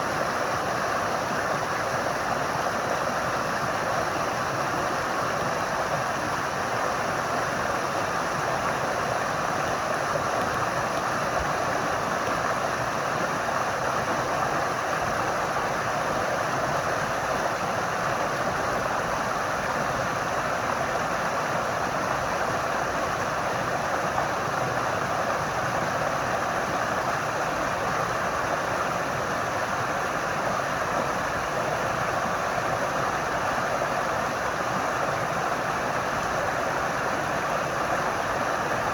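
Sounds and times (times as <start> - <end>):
running water rushing: 0.0 - 38.9.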